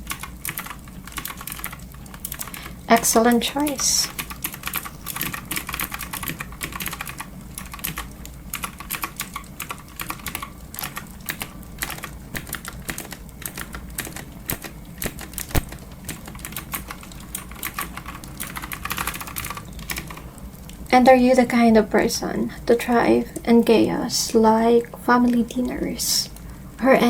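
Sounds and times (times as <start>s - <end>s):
typing on clicky keyboard: 0.0s - 20.2s.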